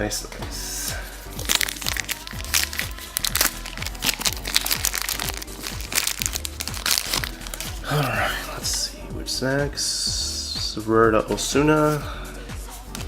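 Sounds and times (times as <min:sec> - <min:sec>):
sliding deep bass notes: 0:00.1 - 0:09.5.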